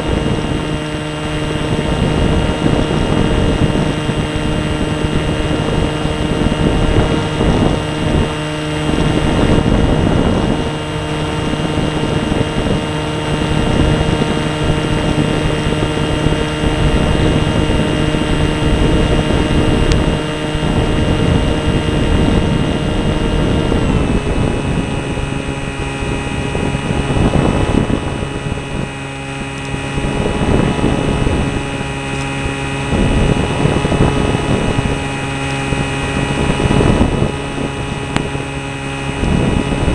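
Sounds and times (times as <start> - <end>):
model airplane motor and propeller: 0.0 - 39.9
wind rushing over microphone: 0.0 - 39.9.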